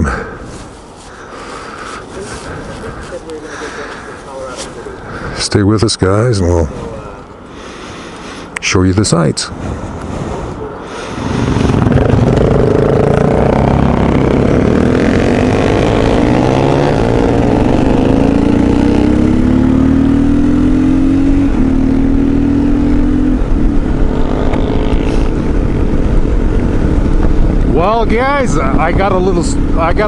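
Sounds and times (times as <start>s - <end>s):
motorcycle engine accelerating: 11.2s - 30.0s.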